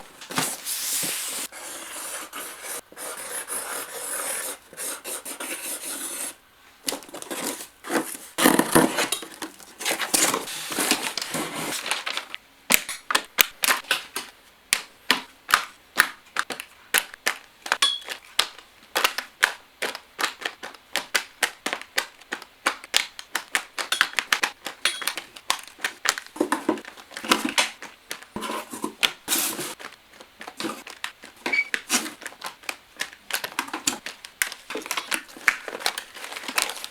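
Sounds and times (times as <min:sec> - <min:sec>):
packaging rustling and tearing: 0:06.8 - 0:12.4, 0:23.8 - 0:36.9.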